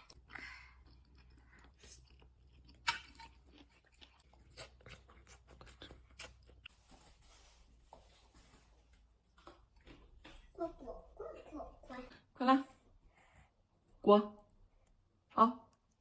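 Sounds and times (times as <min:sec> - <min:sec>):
chewing: 0:00.0 - 0:06.8.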